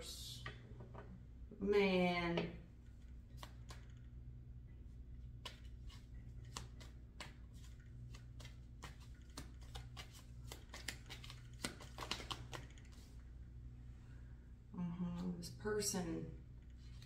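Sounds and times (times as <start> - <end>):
faint low hum: 0.0 - 17.0
cards shuffling: 5.4 - 13.2, 16.8 - 17.0.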